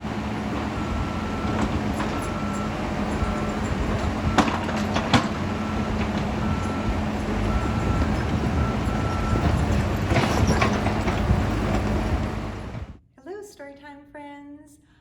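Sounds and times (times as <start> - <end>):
heavy machinery engine rumble: 0.0 - 13.0
reversing alarm beeping: 0.4 - 10.9.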